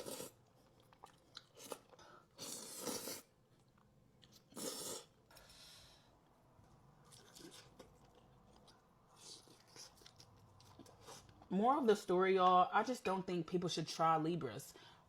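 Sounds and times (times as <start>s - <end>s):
chewing and crunching food: 0.0s - 5.0s, 6.6s - 11.5s.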